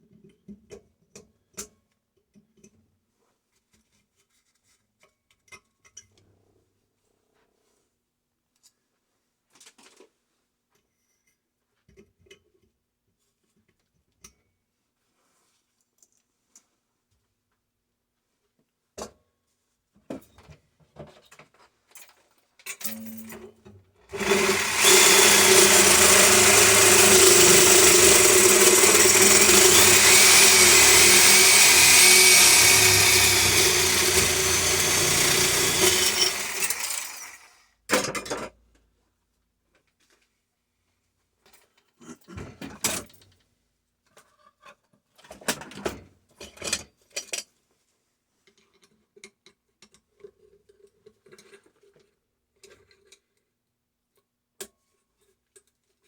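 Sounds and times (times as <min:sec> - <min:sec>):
power tool cutting steel: 0:24.1 - 0:37.5.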